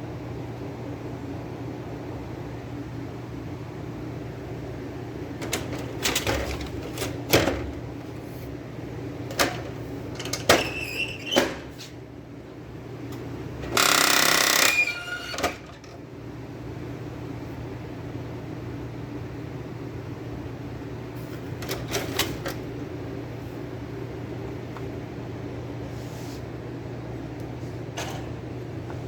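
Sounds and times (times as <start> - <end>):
printer hum: 2.8 - 10.6, 11.9 - 29.0
printer knocking and clacking: 5.4 - 8.0, 9.3 - 10.7, 13.7 - 15.8
loud harsh printer rattle: 13.7 - 15.8.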